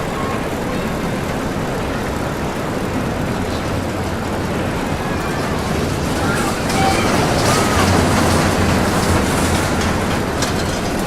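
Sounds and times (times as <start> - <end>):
roller coaster rumbling on track: 0.0 - 11.0.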